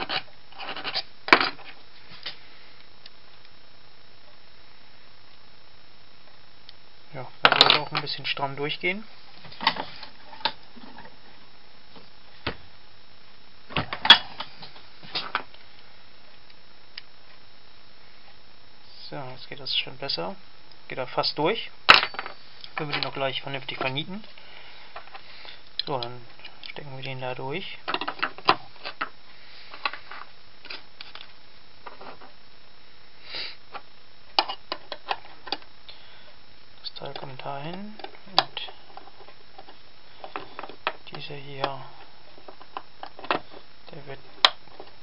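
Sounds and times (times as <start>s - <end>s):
person sniffing: 33.2s - 33.6s.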